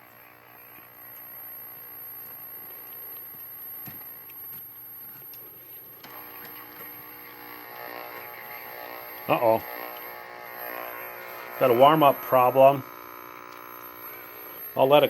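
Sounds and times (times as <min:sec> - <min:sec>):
television speaker hum: 0:00.0 - 0:15.0
high-pitched whine: 0:09.0 - 0:15.0.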